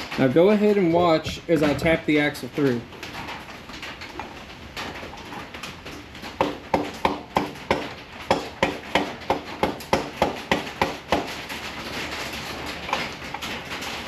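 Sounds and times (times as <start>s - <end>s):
hammer knocking on metal: 6.4s - 11.3s.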